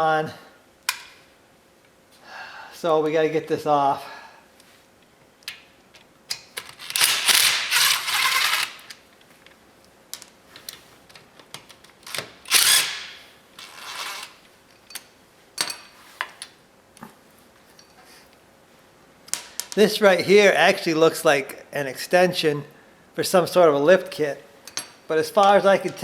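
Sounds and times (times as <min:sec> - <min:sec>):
ratchet tool loosening bolts: 0:06.6 - 0:09.0, 0:12.0 - 0:14.4.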